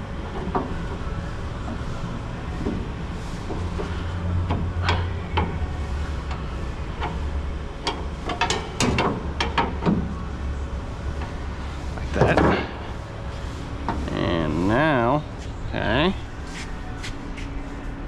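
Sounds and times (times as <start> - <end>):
steady low hum: 0.0 - 18.0
metallic clicks and knocks: 7.8 - 10.0.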